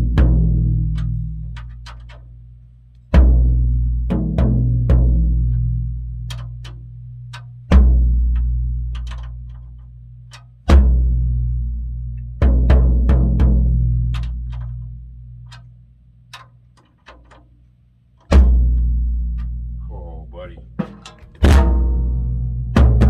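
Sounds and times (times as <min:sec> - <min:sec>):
faint light ticks: 0:06.2 - 0:07.5, 0:15.5 - 0:15.7
low drum hits ringing out: 0:18.3 - 0:23.0.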